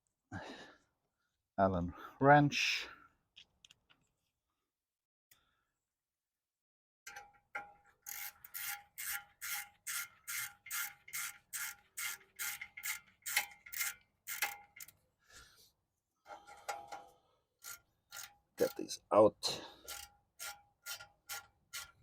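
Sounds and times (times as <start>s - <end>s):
ratchet wrench clicking: 8.0s - 15.0s, 17.6s - 18.8s, 19.8s - 22.0s.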